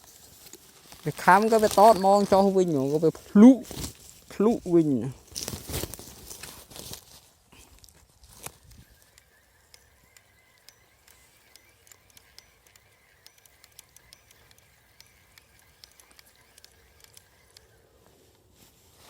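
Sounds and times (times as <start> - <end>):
light clicks: 8.4 - 17.8.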